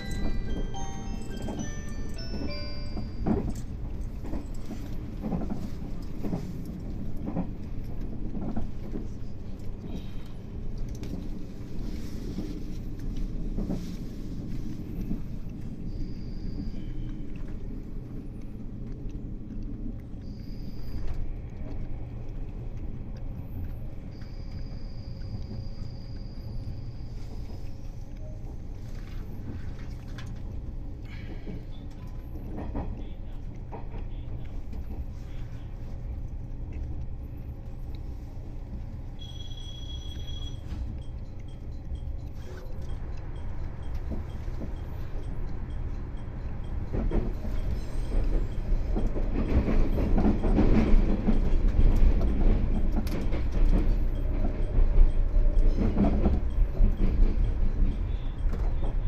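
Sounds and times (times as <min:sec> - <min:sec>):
high steady tone: 0:00.0 - 0:03.8
train rumble and wheel clatter: 0:00.0 - 0:59.0.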